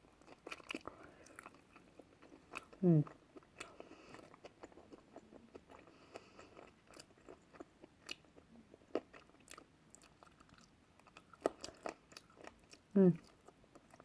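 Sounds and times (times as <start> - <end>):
person chewing food: 0.1 - 14.0.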